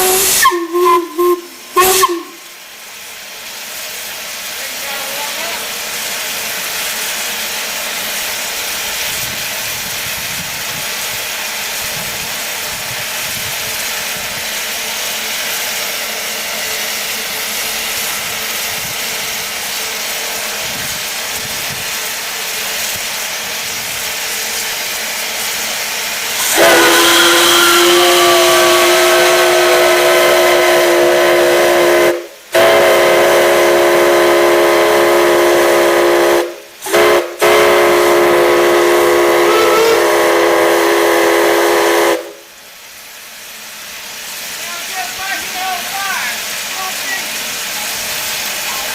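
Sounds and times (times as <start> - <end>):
steam whistle chord: 0.0 - 2.6, 26.4 - 42.5
steam hissing: 0.0 - 48.9.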